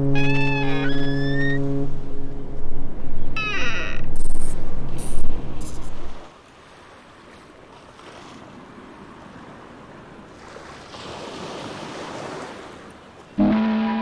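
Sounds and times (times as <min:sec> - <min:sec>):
loud low droning tone: 0:00.0 - 0:03.4, 0:13.4 - 0:14.0.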